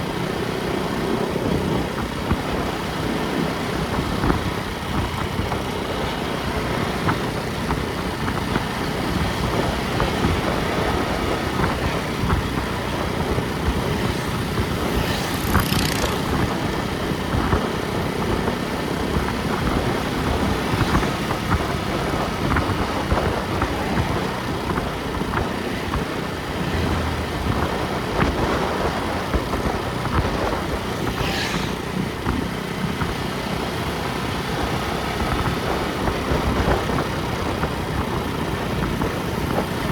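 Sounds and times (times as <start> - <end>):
vehicle engine and road noise: 0.0 - 39.9
brief hissing swells: 31.0 - 32.0.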